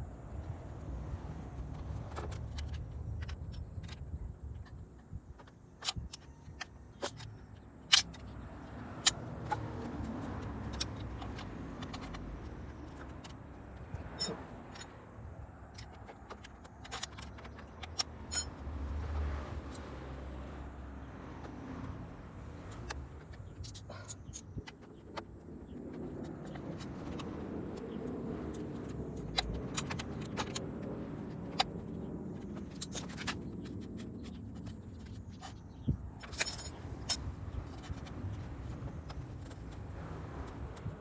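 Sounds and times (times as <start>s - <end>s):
metal tools clinking: 14.1s - 15.0s, 15.7s - 18.6s, 36.2s - 38.0s.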